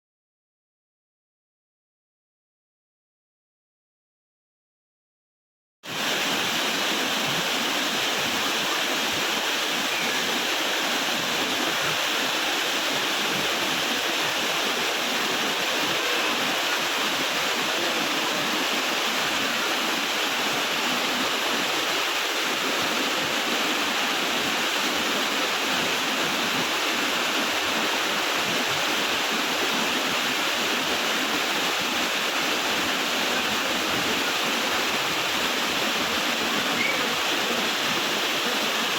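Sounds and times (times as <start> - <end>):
waterfall rushing: 5.9 - 38.9.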